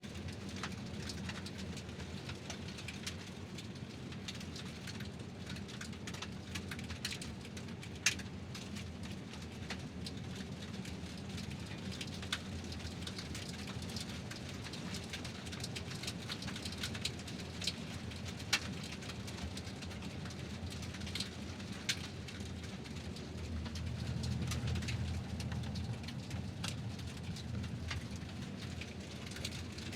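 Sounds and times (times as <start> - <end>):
car tyres rolling over gravel: 11.7 - 29.9.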